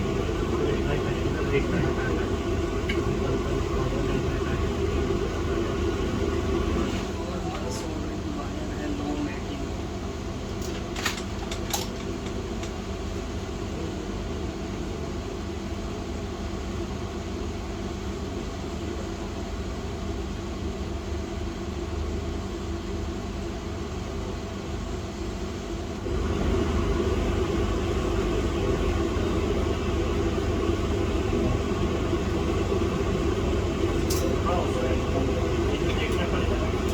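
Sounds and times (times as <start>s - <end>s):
air blower humming: 0.0s - 16.6s, 25.0s - 36.9s.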